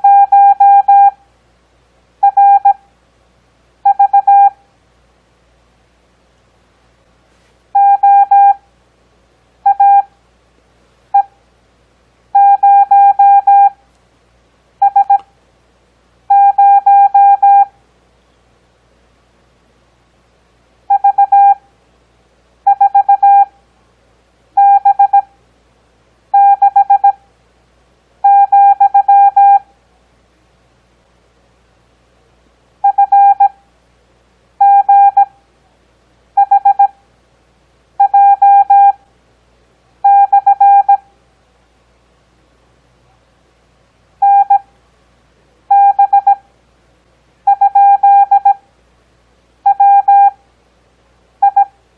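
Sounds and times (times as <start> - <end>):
morse code beeps: 0.0 - 1.2, 2.2 - 2.8, 3.8 - 4.6, 7.8 - 8.6, 9.6 - 10.1, 11.1 - 11.3, 12.4 - 13.8, 14.8 - 15.2, 16.3 - 17.7, 20.9 - 21.6, 22.7 - 23.5, 24.6 - 25.3, 26.4 - 27.2, 28.2 - 29.6, 32.8 - 33.5, 34.6 - 35.3, 36.4 - 36.9, 38.0 - 39.0, 40.0 - 41.0, 44.2 - 44.7, 45.7 - 46.4, 47.5 - 48.6, 49.6 - 50.4, 51.4 - 51.7.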